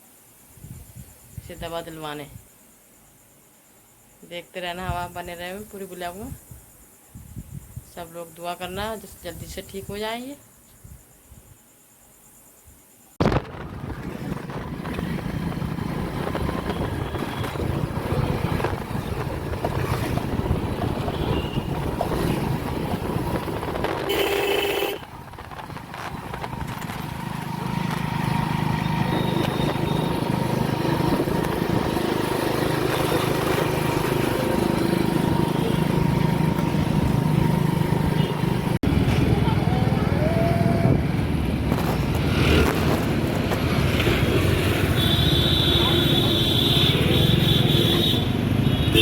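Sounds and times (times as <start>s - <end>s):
road noise: 13.2s - 49.0s
vehicle engine droning: 13.5s - 49.0s.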